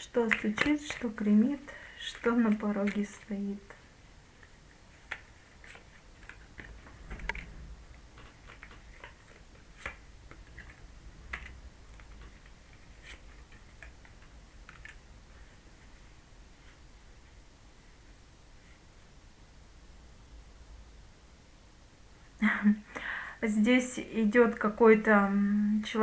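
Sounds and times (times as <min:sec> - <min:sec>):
cards clicking on a table: 0:00.2 - 0:01.3, 0:05.0 - 0:15.0.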